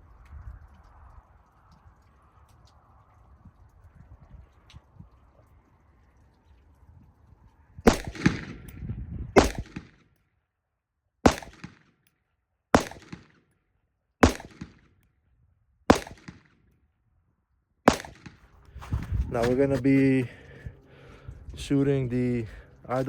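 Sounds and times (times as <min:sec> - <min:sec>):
rifle shots: 0:07.9 - 0:08.8, 0:09.4 - 0:10.0, 0:11.3 - 0:12.0, 0:12.8 - 0:13.4, 0:14.2 - 0:15.0, 0:15.9 - 0:16.6, 0:17.9 - 0:18.6.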